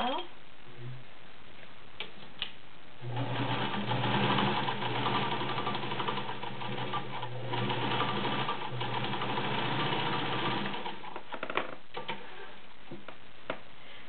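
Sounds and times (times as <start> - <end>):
sewing machine stitching: 3.0 - 11.2.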